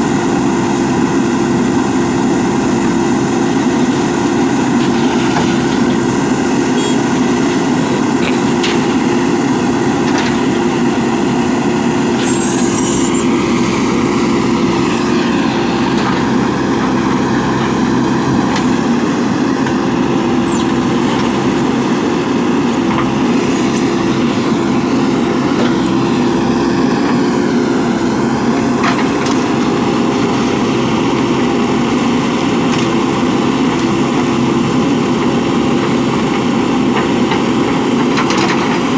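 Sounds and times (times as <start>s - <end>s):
diesel engine droning: 0.0s - 38.9s.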